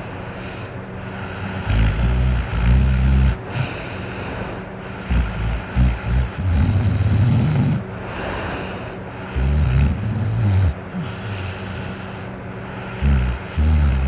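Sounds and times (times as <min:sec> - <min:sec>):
electric fan whirring: 0:00.0 - 0:14.0
man snoring loudly: 0:01.1 - 0:03.8, 0:04.9 - 0:07.8, 0:09.2 - 0:12.0, 0:12.7 - 0:14.0.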